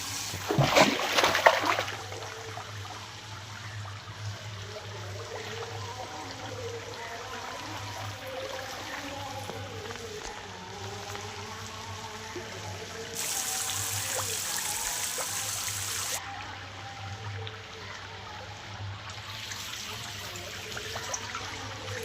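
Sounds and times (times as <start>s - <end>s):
hissing rush of water: 0.0s - 3.4s, 4.6s - 16.3s
water trickling and splashing: 0.0s - 22.0s.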